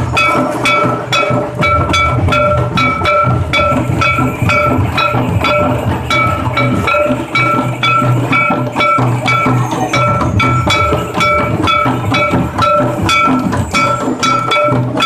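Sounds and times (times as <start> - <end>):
fast drumming: 0.0 - 15.0.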